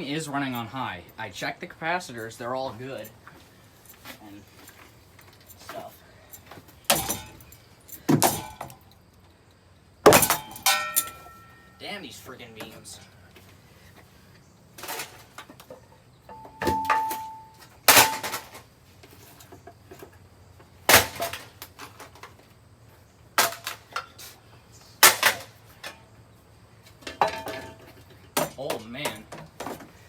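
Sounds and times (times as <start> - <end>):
metallic ring: 10.2 - 11.9, 16.3 - 18.2.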